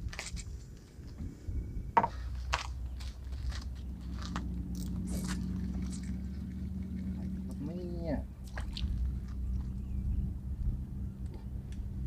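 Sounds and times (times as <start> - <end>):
hum: 0.0 - 12.0
low drone: 3.7 - 12.0
gear clicking and scraping: 4.2 - 7.2.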